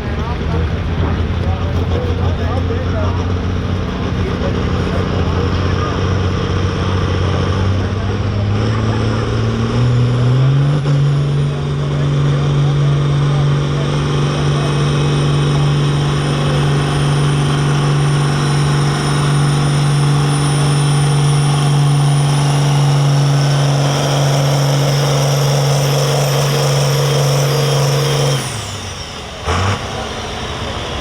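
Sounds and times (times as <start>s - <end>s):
diesel tractor engine under load: 0.0s - 31.0s
loud burst of noise: 6.1s - 31.0s
high turbo whistle: 15.3s - 30.8s.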